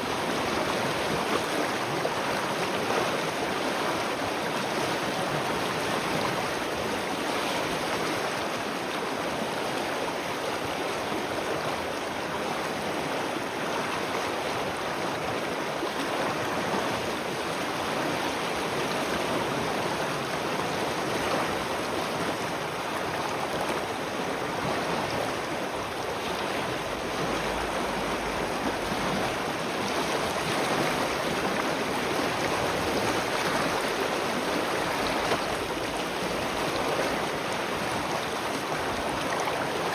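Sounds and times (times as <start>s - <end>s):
spring water flowing: 17.2s - 39.9s.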